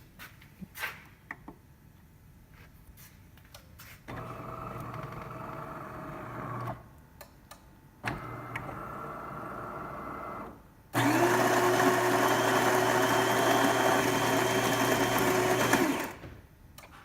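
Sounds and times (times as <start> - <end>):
espresso machine motor humming: 11.0 - 16.2.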